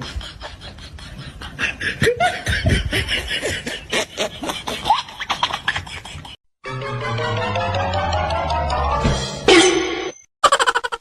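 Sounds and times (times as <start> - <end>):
person laughing: 0.0 - 6.4, 10.4 - 11.0.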